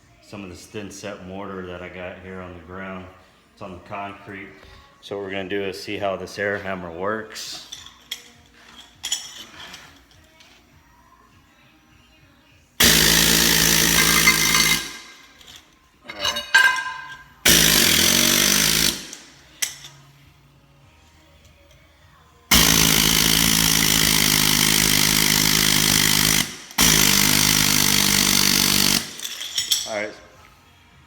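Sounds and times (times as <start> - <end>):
pneumatic air hammer chiseling: 12.8 - 15.6, 17.4 - 19.9, 22.5 - 29.7.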